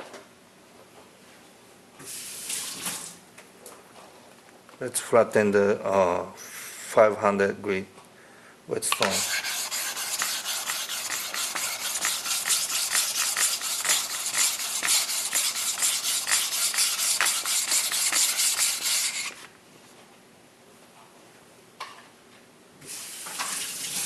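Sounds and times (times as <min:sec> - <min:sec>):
whetstone rubbing strokes: 0:09.0 - 0:19.4.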